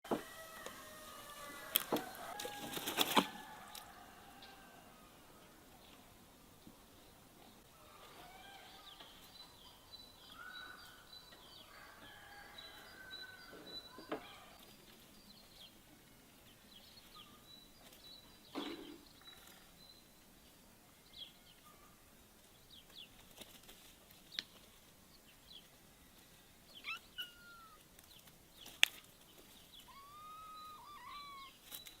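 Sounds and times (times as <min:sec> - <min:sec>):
birds chirping and calling: 0:26.7 - 0:32.0.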